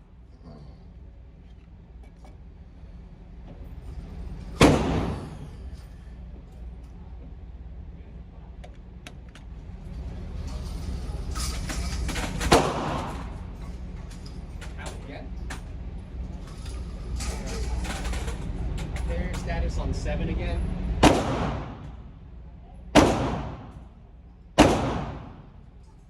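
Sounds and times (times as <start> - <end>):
pistol shots with echo: 4.6 - 5.2, 12.5 - 13.2, 21.0 - 21.9, 23.0 - 23.8, 24.6 - 25.5.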